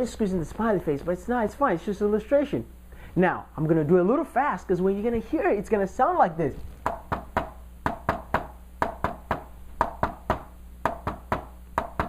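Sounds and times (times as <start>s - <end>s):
hand knocks in triple rhythm: 6.8s - 12.0s.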